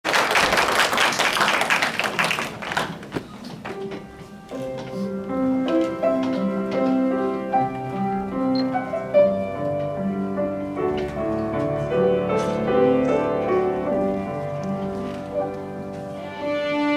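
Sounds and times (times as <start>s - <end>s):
clapping: 0.1s - 3.1s
keyboard slow melody: 3.8s - 16.9s.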